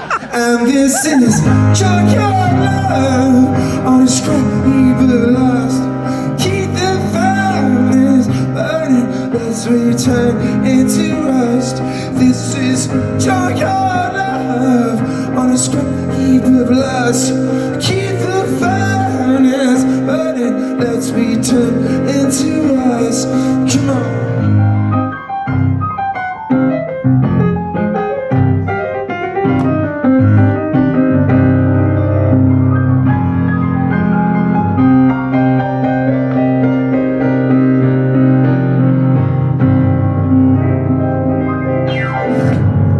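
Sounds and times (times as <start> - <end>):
full band playing: 0.0 - 7.0
piano playing chords: 0.0 - 42.9.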